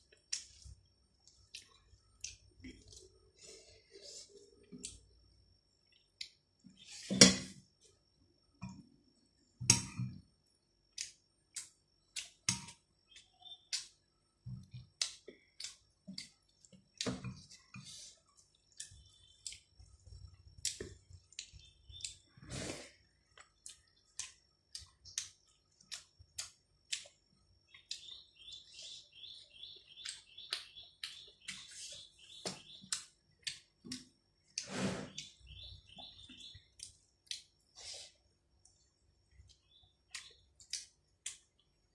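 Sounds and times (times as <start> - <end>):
small bird chirping: 10.8 - 41.9.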